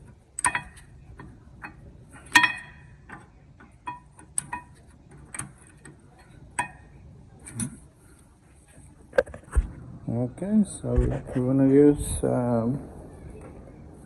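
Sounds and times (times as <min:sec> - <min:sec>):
metal clinking against metal: 0:00.0 - 0:06.9.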